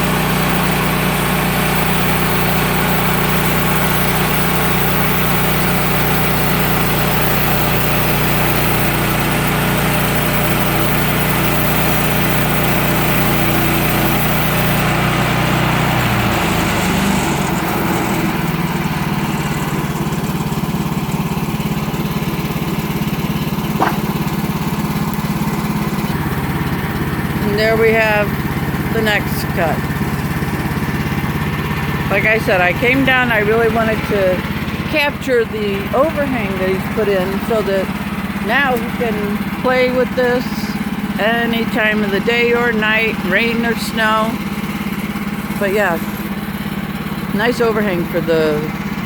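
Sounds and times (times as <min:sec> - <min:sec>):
sawmill engine cutting log: 0:00.0 - 0:49.0.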